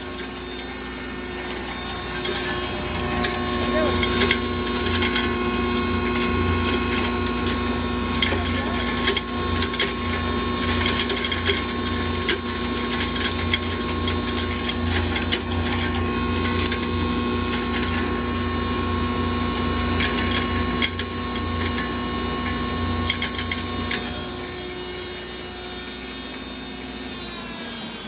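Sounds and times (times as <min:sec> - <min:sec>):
rapid rattling clicks: 0:00.0 - 0:18.5
grinder motor hum: 0:00.0 - 0:28.0.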